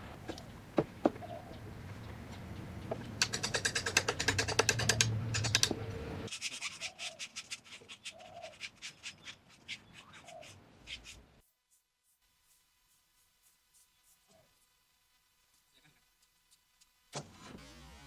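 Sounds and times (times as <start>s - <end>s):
hand tool scraping wood: 0.0s - 6.3s.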